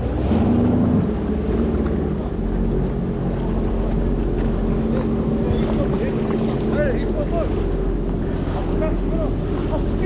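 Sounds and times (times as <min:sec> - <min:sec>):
jet ski engine running: 0:00.0 - 0:10.0.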